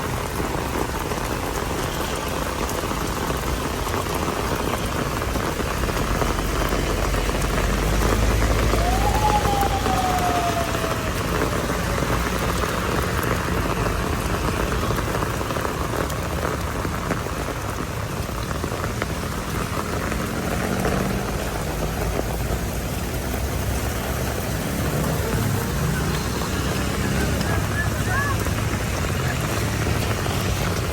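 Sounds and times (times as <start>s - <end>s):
heavy rain falling: 0.0s - 30.9s
falling tone: 8.4s - 12.0s.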